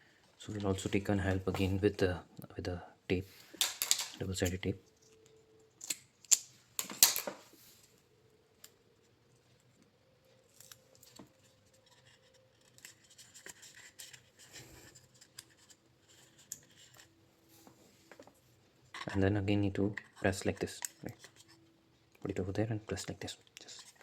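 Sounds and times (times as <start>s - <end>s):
tape scratching and rustling: 10.3s - 17.2s.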